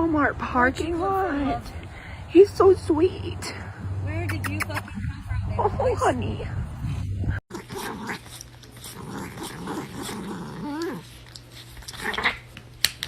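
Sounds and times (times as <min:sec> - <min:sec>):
dog growling and grumbling: 0:07.5 - 0:12.5.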